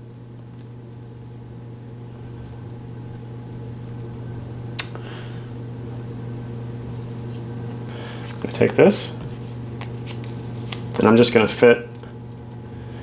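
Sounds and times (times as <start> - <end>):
fan humming: 0.0 - 13.0.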